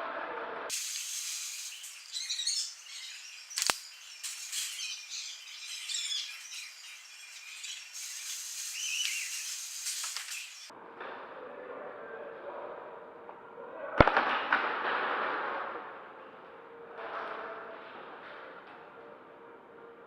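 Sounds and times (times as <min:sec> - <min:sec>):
birds chirping: 0:00.7 - 0:10.7
sharp click: 0:03.5 - 0:04.4.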